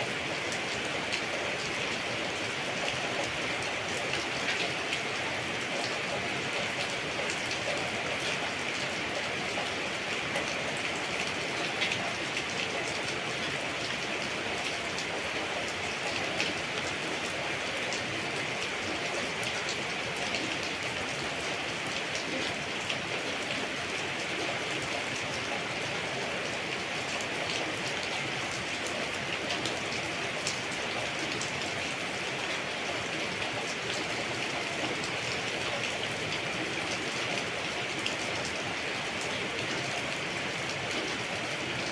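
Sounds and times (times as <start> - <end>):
steady rain falling: 0.0 - 41.9.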